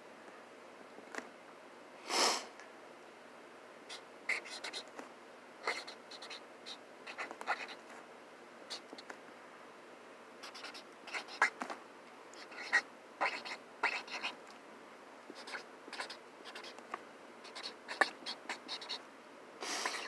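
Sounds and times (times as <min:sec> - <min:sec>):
marker scratching on cardboard: 0:03.9 - 0:04.9, 0:05.6 - 0:07.8, 0:10.4 - 0:11.6, 0:12.4 - 0:14.4, 0:15.3 - 0:16.8, 0:17.5 - 0:19.0.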